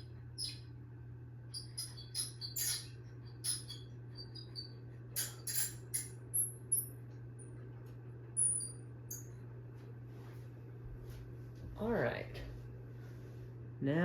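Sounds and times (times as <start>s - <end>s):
high-pitched chirps and squeaks: 0.0s - 0.8s, 1.4s - 6.9s
ceiling fan motor humming: 0.0s - 14.0s.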